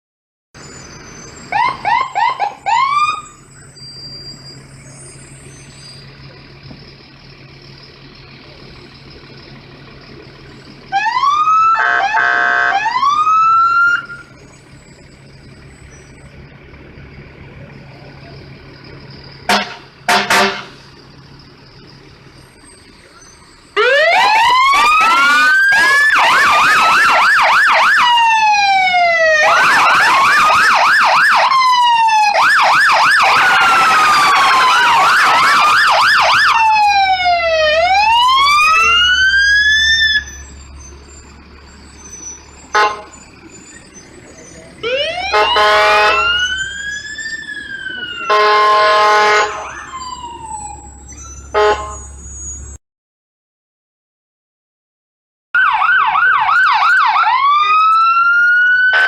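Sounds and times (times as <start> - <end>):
fire engine sirens: 0.6 - 52.8, 55.6 - 59.0
blaring horn: 10.9 - 13.0, 19.5 - 20.8, 42.7 - 43.2, 44.8 - 46.5, 48.2 - 49.9, 51.5 - 52.3.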